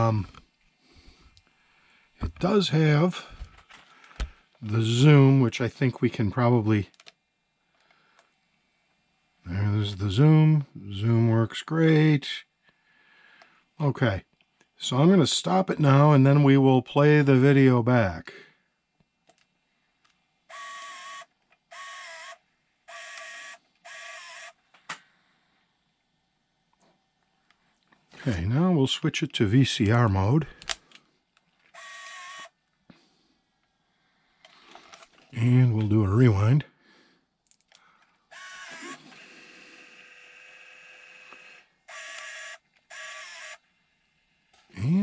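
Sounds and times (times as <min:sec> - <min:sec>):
camcorder tape mechanism whirring: 0:19.0 - 0:25.0, 0:30.6 - 0:32.6, 0:37.6 - 0:44.7
camcorder click: 0:23.0 - 0:23.4, 0:41.2 - 0:43.6.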